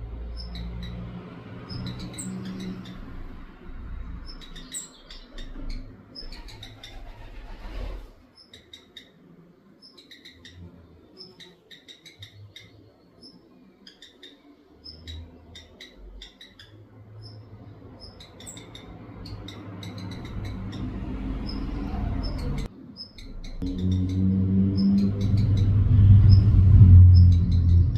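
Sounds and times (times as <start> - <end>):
bird calling with squeaky notes: 4.2 - 9.2, 18.0 - 26.5
low rumble: 23.3 - 27.9.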